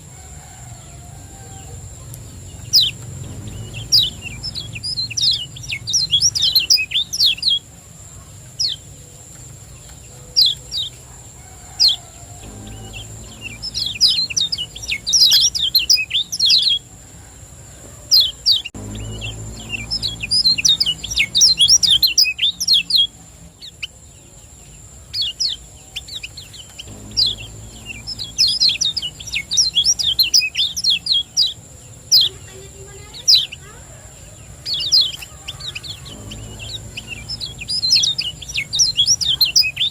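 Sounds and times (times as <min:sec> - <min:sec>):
bird chirping: 0:00.0 - 0:39.9
faint high whine: 0:00.0 - 0:39.9.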